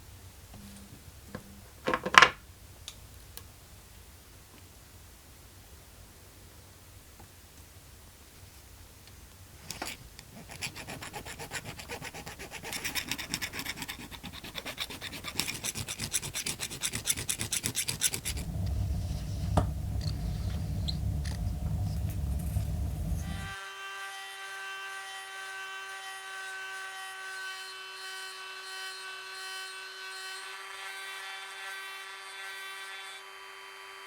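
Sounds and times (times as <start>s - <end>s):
low steady hum: 0.0s - 3.4s, 17.3s - 23.6s
file rasping on metal coin: 9.8s - 18.4s.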